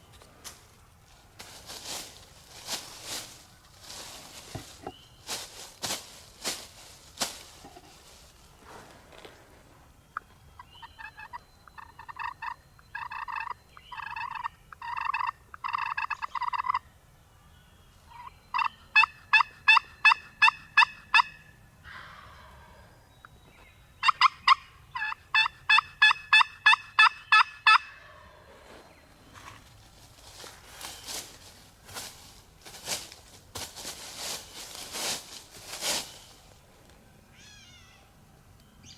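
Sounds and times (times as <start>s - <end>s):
turkey yelping: 10.6s - 16.8s, 18.2s - 22.3s, 24.0s - 28.1s.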